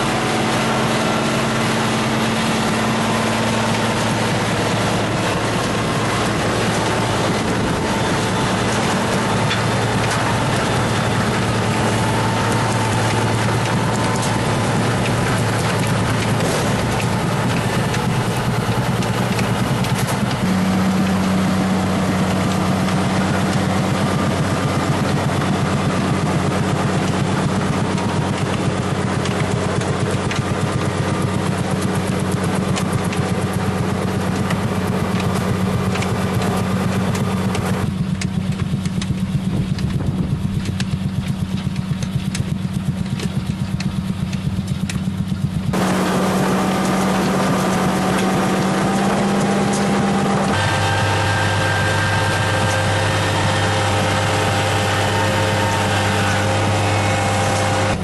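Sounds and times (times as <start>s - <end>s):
machinery clatter: 0.0s - 58.0s
tractor engine running: 0.0s - 58.0s.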